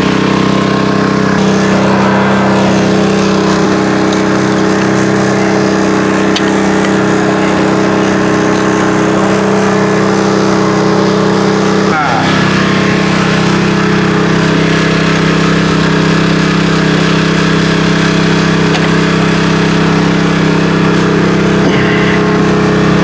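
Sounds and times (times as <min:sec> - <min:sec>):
engine running steadily: 0:00.0 - 0:23.0.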